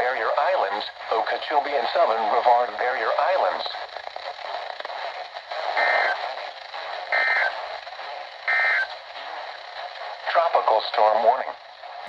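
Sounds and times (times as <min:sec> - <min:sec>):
radio hiss: 0:00.0 - 0:12.0
two-tone data bursts: 0:05.7 - 0:06.4, 0:07.0 - 0:07.6, 0:08.4 - 0:09.0.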